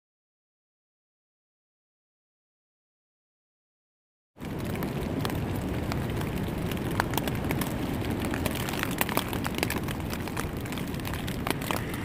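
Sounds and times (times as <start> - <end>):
rain and wind on a tent: 4.4 - 12.0
raindrops ticking on tent fabric: 4.4 - 12.0.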